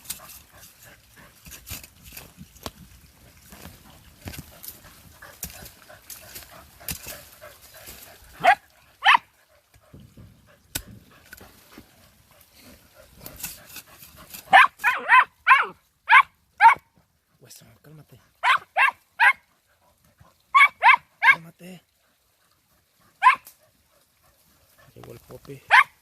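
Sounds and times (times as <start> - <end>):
dogs barking: 4.8 - 9.4, 12.9 - 16.9, 18.3 - 21.5, 23.1 - 25.0, 25.6 - 26.0.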